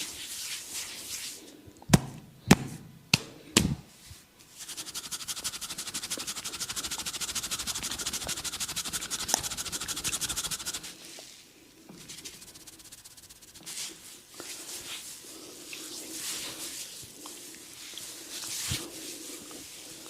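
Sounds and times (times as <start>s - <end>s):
hands rubbing skin and hair: 4.0s - 10.9s, 11.9s - 15.2s.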